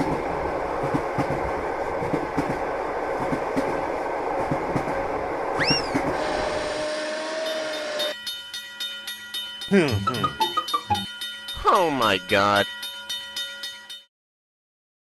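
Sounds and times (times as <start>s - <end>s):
train rumbling on rails: 0.0s - 8.3s.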